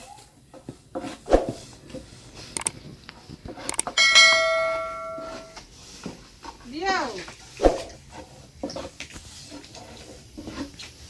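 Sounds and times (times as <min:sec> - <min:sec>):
metal object struck ringing: 0:04.0 - 0:05.6.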